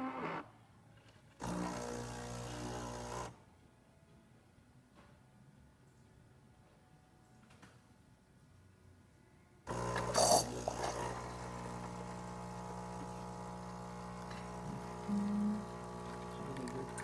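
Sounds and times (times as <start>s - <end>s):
espresso machine humming: 1.4s - 3.3s, 9.7s - 17.0s.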